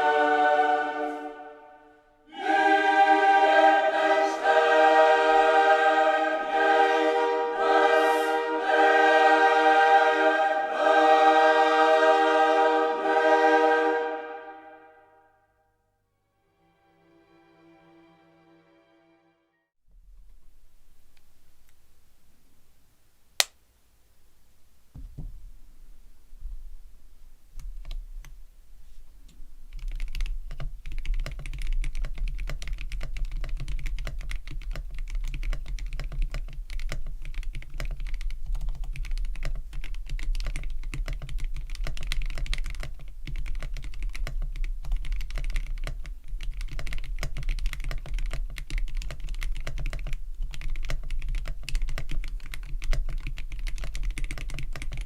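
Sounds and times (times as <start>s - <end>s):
mechanical keyboard typing: 29.7s - 55.0s.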